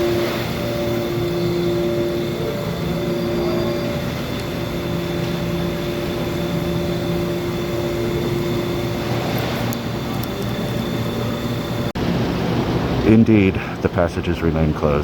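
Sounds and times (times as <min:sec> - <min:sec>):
mechanical drone with hum tones: 0:00.0 - 0:15.0.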